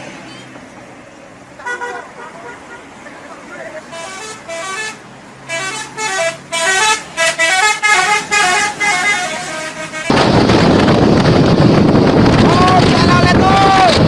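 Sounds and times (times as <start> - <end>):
multi-tone bus horn melody: 1.6 - 3.0, 3.8 - 10.3
loud rushing noise: 9.7 - 14.0.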